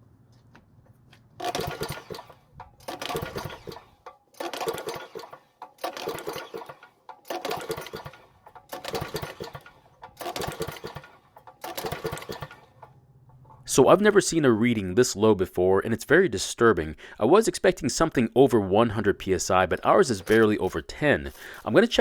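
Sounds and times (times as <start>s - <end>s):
pull-cord starter cranking engine: 1.4s - 13.7s, 19.5s - 22.0s.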